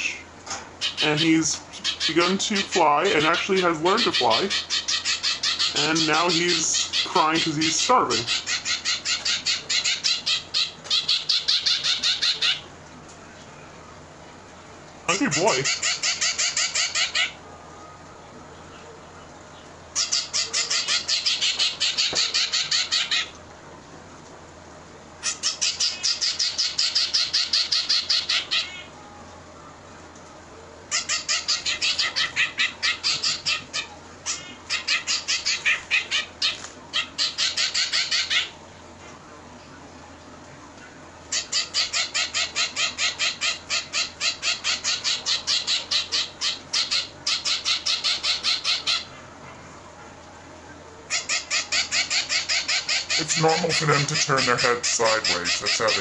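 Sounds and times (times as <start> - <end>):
finch fledgling begging calls: 0.8 - 12.7, 15.1 - 17.4, 20.0 - 23.4, 25.2 - 28.9, 30.9 - 38.5, 41.3 - 49.1, 51.1 - 56.0.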